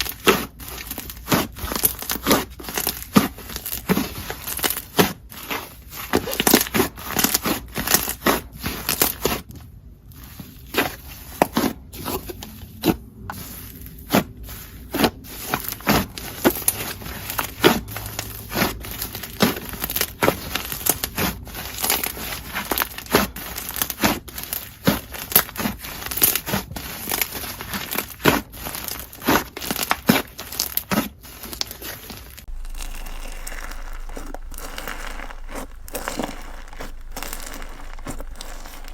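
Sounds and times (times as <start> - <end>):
slime squished by hand: 32.5 - 38.9.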